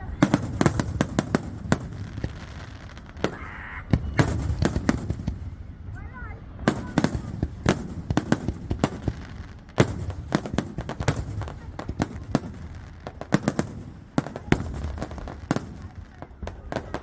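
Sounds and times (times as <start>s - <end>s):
fireworks bangs and cracks: 0.0s - 17.0s
low rumble of fireworks display: 0.0s - 17.0s.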